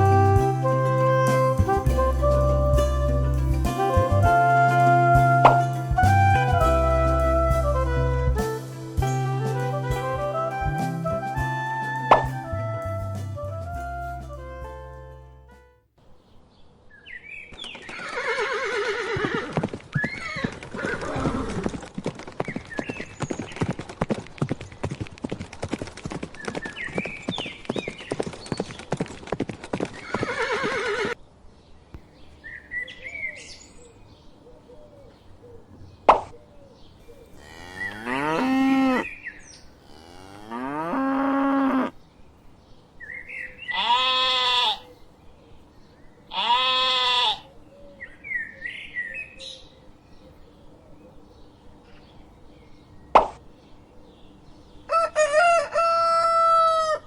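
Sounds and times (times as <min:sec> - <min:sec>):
wavering bleats: 0:37.2 - 0:42.0, 0:43.6 - 0:44.9, 0:46.3 - 0:47.6.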